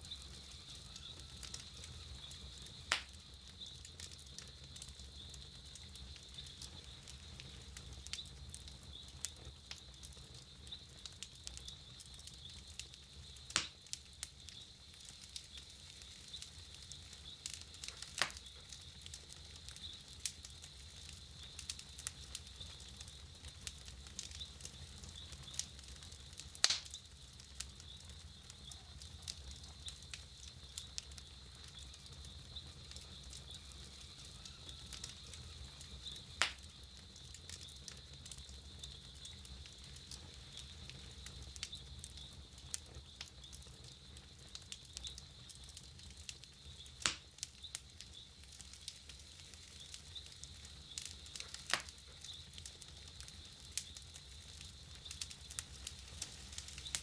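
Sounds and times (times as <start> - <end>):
campfire crackling and popping: 0.0 - 57.0.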